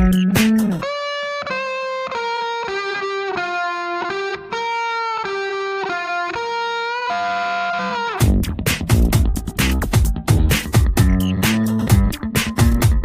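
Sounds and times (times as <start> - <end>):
solo electric guitar melody: 0.0 - 8.5.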